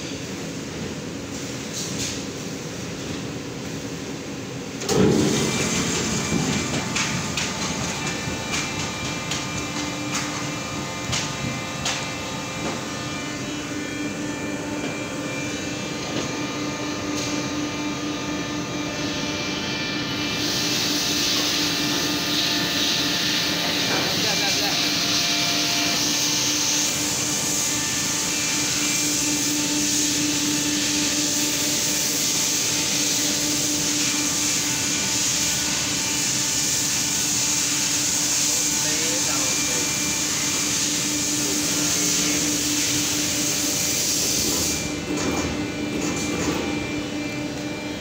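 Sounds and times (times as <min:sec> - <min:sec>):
press machine humming: 0:04.7 - 0:16.2
hiss: 0:20.4 - 0:44.9.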